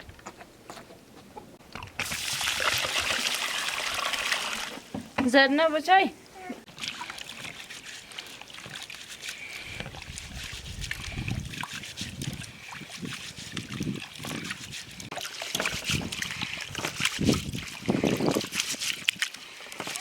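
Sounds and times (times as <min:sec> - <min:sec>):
water sloshing in a container: 0:01.8 - 0:05.4, 0:06.7 - 0:20.0.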